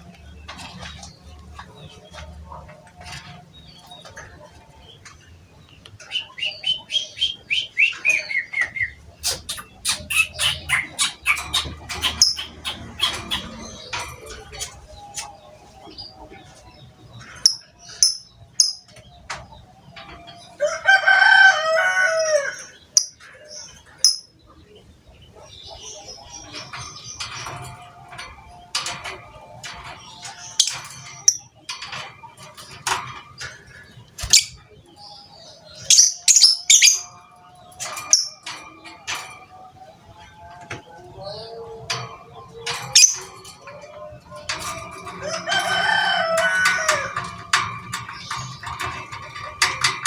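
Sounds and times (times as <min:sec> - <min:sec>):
high bird chirps: 0:06.0 - 0:14.0
bird chattering trill: 0:06.1 - 0:14.6.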